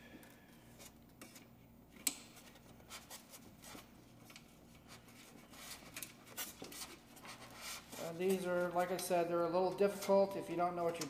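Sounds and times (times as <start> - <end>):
hand rubbing and scraping parts: 2.2 - 10.3.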